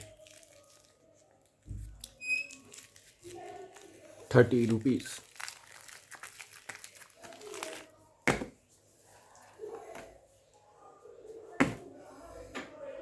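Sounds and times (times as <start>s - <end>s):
packaging rustling: 0.0s - 1.2s, 1.9s - 8.5s.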